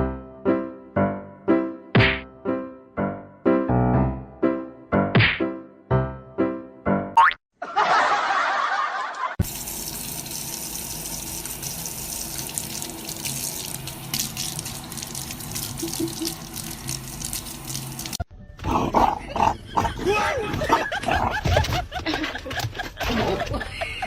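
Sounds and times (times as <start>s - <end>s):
water running and splashing: 9.4s - 18.2s.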